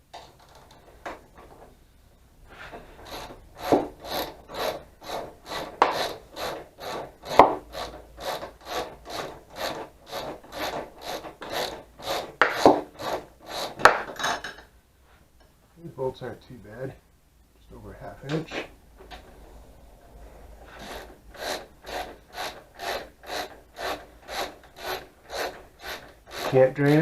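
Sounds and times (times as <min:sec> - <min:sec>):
ratchet wrench rasping: 0:02.9 - 0:13.9, 0:20.7 - 0:27.0.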